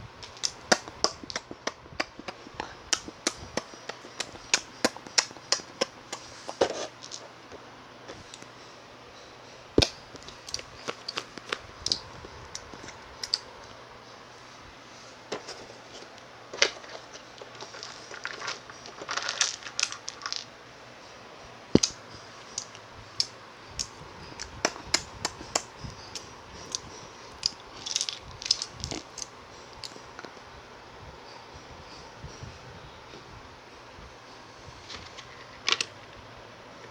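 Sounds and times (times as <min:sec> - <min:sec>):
eating crunches and crinkles: 0:00.2 - 0:07.4, 0:09.8 - 0:13.8, 0:15.4 - 0:20.6, 0:21.8 - 0:30.1.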